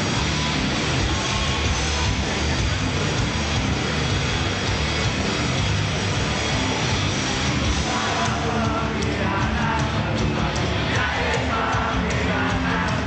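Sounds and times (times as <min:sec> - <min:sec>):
rock band playing live: 0:00.0 - 0:13.0
person singing: 0:07.8 - 0:13.0.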